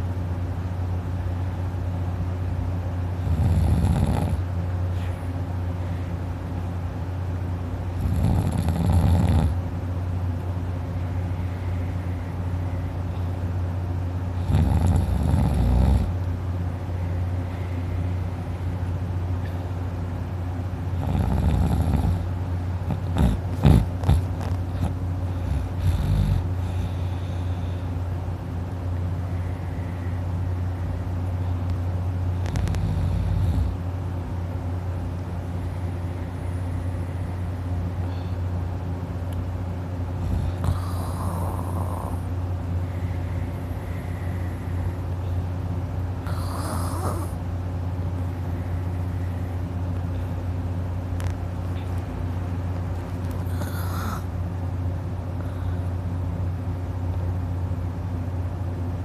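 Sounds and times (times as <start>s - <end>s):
steady low hum: 0.0s - 59.0s
man snoring: 3.2s - 4.5s, 8.0s - 9.6s, 14.4s - 16.2s, 21.0s - 22.3s, 22.9s - 27.4s, 32.4s - 33.8s, 40.2s - 42.3s, 46.2s - 47.4s, 53.4s - 54.3s.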